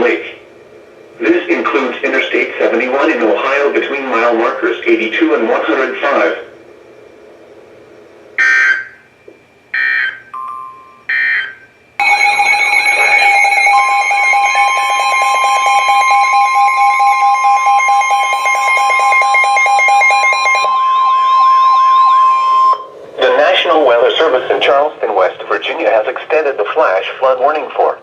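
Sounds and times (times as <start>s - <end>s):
layered electronic alarm: 8.4s - 9.0s, 9.8s - 24.3s
buzzing data bursts: 12.0s - 22.5s.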